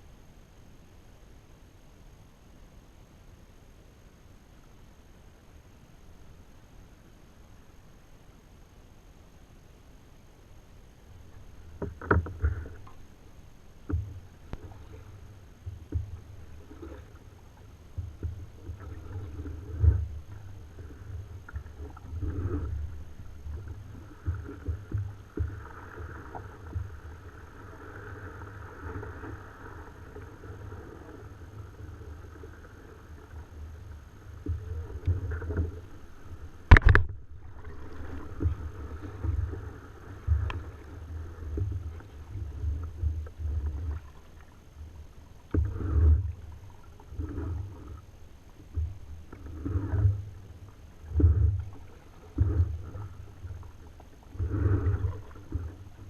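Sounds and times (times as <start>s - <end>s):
knocks against kayak hull: 36.6s - 38.6s.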